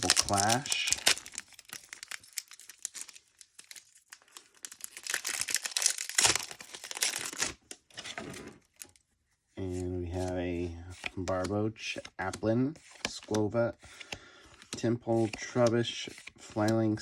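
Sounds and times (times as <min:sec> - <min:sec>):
foil wrapper crinkling and tearing: 0:00.0 - 0:07.6.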